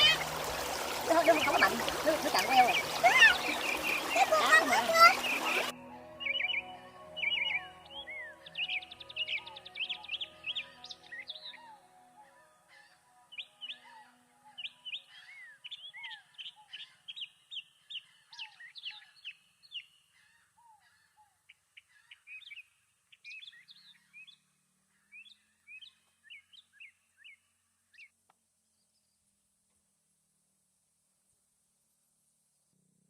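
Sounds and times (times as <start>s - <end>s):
small songbirds chirping: 0.0s - 11.8s, 12.7s - 29.3s.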